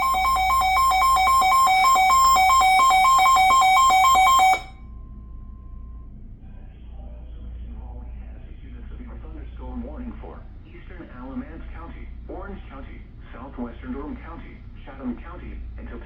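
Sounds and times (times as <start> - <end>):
two-tone electronic alarm warble: 0.0 - 5.0
faint broadcast speech: 6.4 - 16.0.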